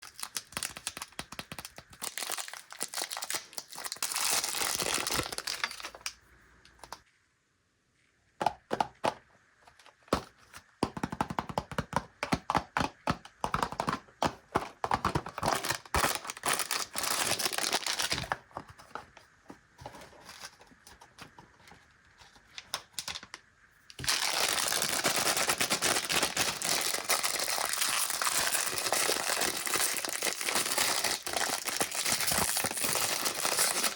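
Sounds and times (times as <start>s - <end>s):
plastic wrappers crinkling: 0.0s - 7.0s, 14.9s - 18.5s, 24.0s - 33.9s.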